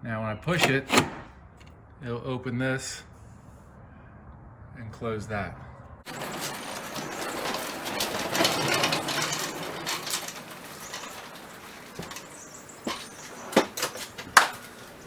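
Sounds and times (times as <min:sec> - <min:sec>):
lever sliding rattle: 0:00.5 - 0:01.3, 0:06.1 - 0:15.0
blast gates knocking: 0:00.5 - 0:01.4, 0:06.1 - 0:15.0.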